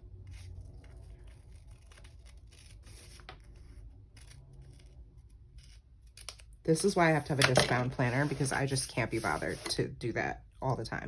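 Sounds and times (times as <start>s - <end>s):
scissors snipping paper: 0.3s - 8.5s.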